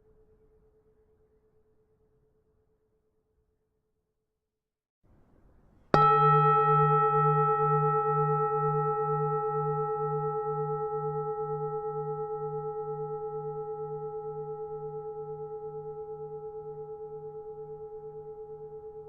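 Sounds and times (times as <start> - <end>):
temple bell ringing: 6.0 - 17.8.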